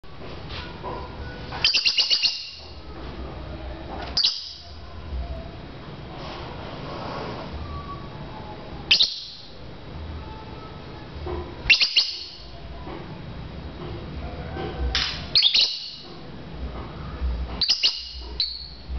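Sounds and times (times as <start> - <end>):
lovebird chirping: 1.6 - 2.8, 4.2 - 4.7, 8.9 - 9.6, 11.6 - 12.5, 15.3 - 16.1, 17.6 - 18.8.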